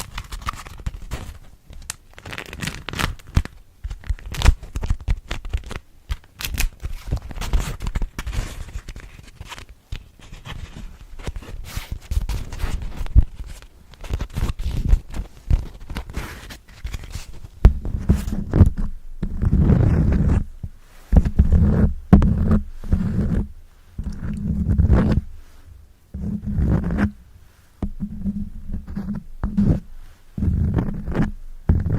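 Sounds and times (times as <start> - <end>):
scratching and rubbing textured surface: 0.0 - 31.9.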